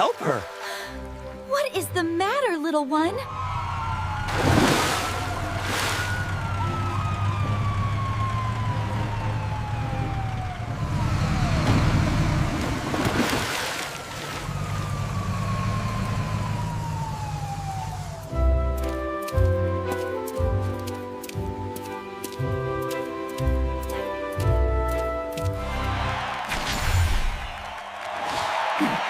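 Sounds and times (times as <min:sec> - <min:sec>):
emergency siren wailing: 0:03.2 - 0:12.8, 0:14.3 - 0:20.3.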